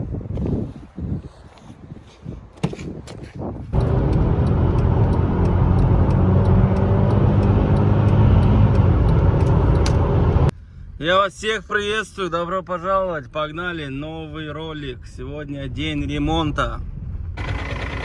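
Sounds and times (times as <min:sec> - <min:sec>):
light regular ticking: 0:03.8 - 0:09.8
diesel truck engine running: 0:03.8 - 0:10.5, 0:17.4 - 0:18.0.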